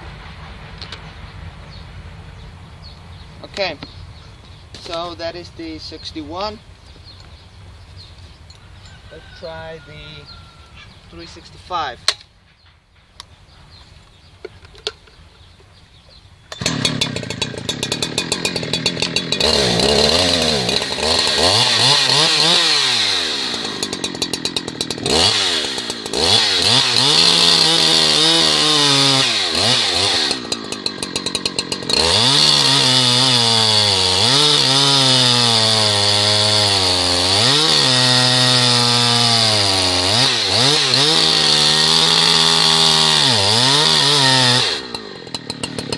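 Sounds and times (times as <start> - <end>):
chainsaw revving and cutting wood: 4.8 - 7.2, 8.8 - 12.1, 16.5 - 45.9.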